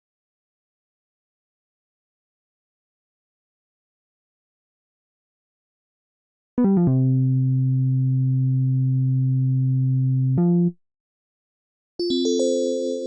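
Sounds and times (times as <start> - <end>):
bell-like synthesizer tone: 12.0 - 13.0
synthesizer notes and chord: 12.0 - 13.0.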